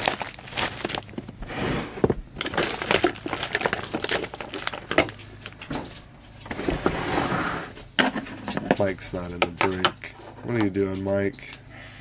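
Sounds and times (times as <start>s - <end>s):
plastic wrapping crinkling: 0.0s - 1.4s, 2.1s - 5.7s.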